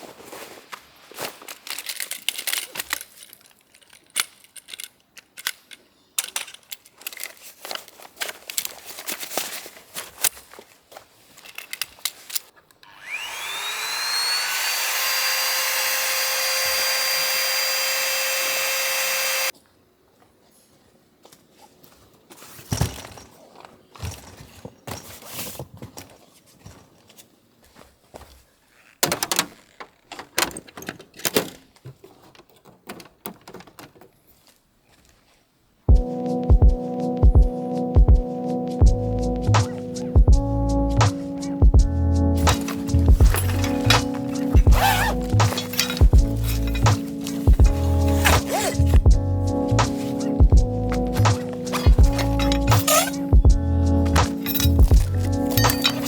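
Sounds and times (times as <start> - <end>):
clicking and rustling of gear: 1.2 - 19.6, 28.7 - 35.2, 41.0 - 56.0
small electric motor whine: 12.8 - 19.5.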